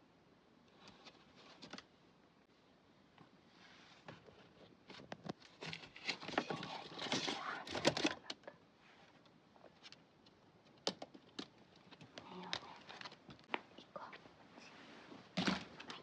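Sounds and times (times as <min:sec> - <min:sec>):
rabbit rustling and scratching: 0:00.7 - 0:02.0, 0:03.2 - 0:16.0.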